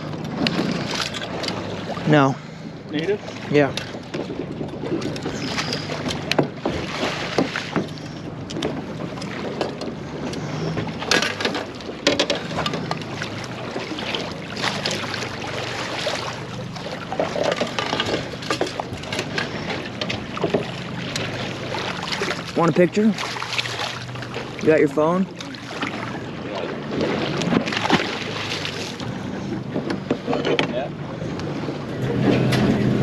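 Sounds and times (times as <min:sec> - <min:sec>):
knocks and clatter of gear: 0:00.0 - 0:01.6, 0:03.8 - 0:13.2, 0:17.1 - 0:21.6
boat motor idling: 0:00.0 - 0:33.0.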